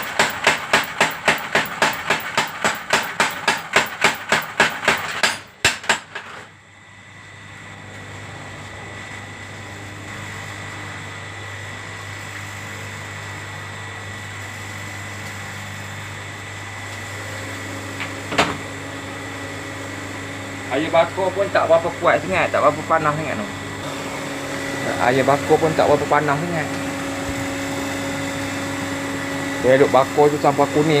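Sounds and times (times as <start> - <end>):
power hammer striking: 0.0 - 6.4
steady machine hum: 0.0 - 31.0.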